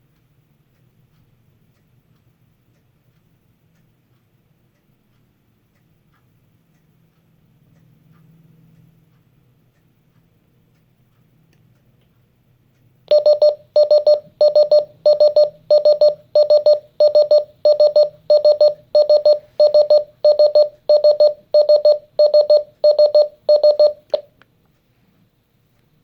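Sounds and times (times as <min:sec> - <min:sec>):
alarm clock beeping: 0:13.1 - 0:24.3.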